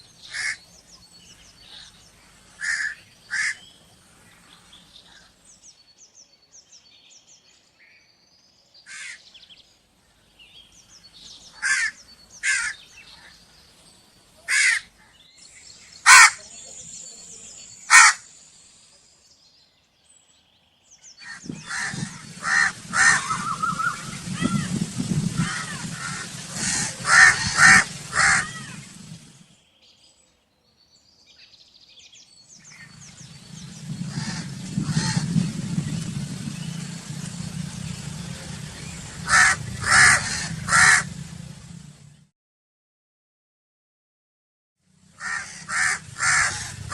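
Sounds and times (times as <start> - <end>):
crows cawing: 0.3 - 0.6, 2.6 - 3.6, 8.9 - 9.2, 11.5 - 13.3, 14.4 - 15.1, 16.0 - 16.4, 17.9 - 18.3, 21.2 - 24.8, 25.4 - 29.0, 34.2 - 35.2, 39.2 - 41.2, 45.2 - 46.9.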